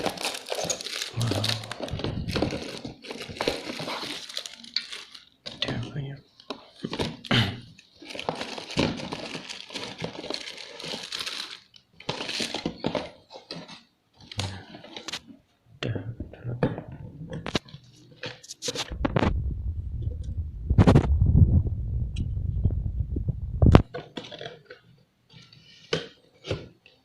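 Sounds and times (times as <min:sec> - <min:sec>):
plastic packaging crinkling: 0:00.0 - 0:15.2.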